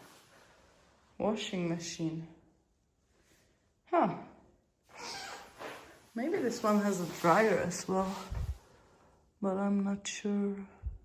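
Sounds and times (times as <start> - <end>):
soft hissing noise: 4.9 - 9.1.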